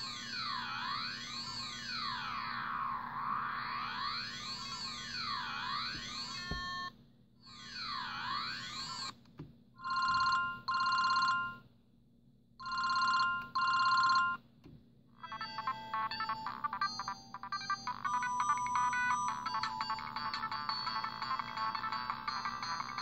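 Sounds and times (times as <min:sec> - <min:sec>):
sweeping electronic tone: 0:00.0 - 0:06.9
trilling telephone ring: 0:09.8 - 0:11.6, 0:12.6 - 0:14.4
beeping electronic melody: 0:15.2 - 0:23.0.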